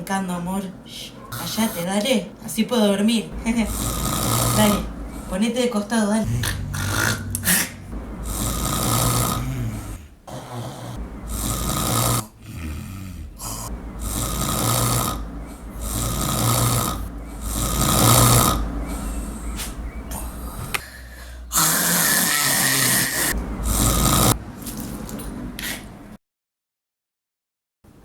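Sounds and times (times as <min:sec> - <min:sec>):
person snoring loudly: 0:03.4 - 0:05.4, 0:06.2 - 0:20.8, 0:21.5 - 0:24.4.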